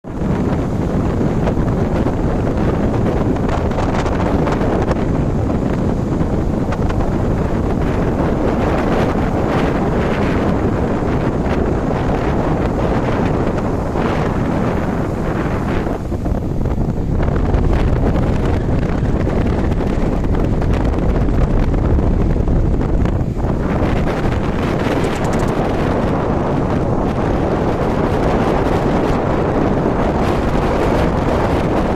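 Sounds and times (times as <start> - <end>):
wind buffeting microphone: 0.0 - 31.9
sea waves: 0.1 - 21.4.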